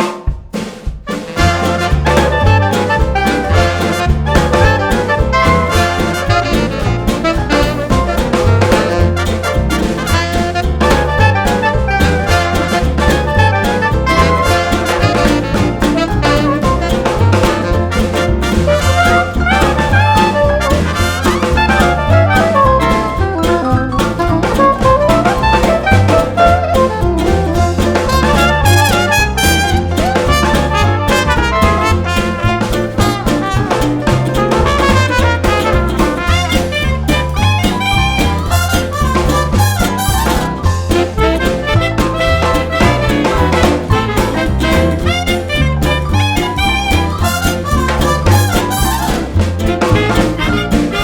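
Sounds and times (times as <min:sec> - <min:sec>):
swing jazz with brass and drums: 0:00.0 - 0:51.0.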